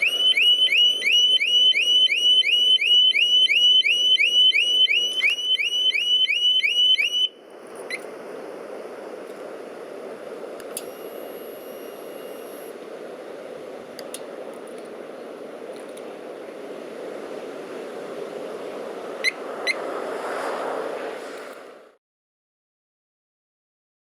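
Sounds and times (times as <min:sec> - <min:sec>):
security alarm chirps: 0:00.0 - 0:08.1, 0:10.8 - 0:12.7
rushing background noise: 0:00.0 - 0:22.0.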